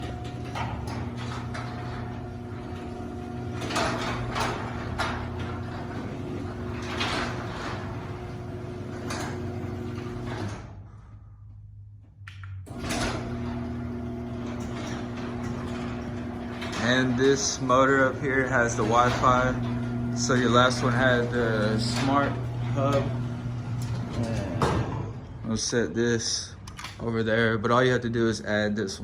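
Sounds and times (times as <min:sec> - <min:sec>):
door panels rattling and knocking: 0:00.0 - 0:10.6, 0:12.9 - 0:25.4
garage door opener motor humming: 0:00.0 - 0:11.1, 0:12.7 - 0:28.5.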